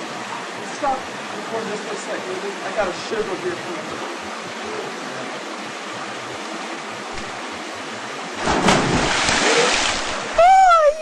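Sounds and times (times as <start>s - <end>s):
water splashing: 6.8s - 11.0s
waterfall rushing: 7.2s - 11.0s.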